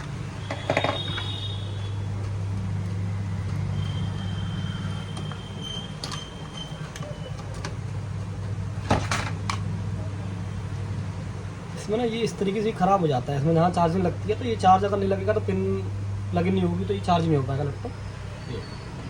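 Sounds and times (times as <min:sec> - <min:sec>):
low mechanical hum: 0:00.0 - 0:19.0.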